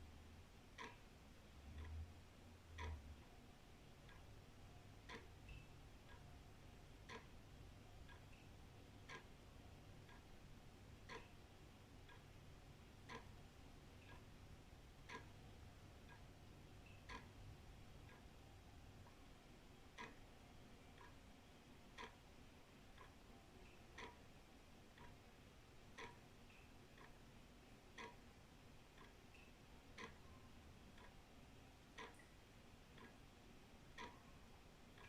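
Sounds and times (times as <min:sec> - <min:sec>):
wall clock ticking: 0:00.0 - 0:35.0.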